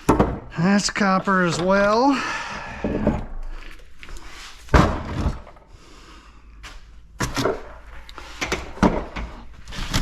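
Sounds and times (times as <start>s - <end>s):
scrap metal knocking and clunking: 1.2s - 3.5s
heavy thud: 4.7s - 5.5s.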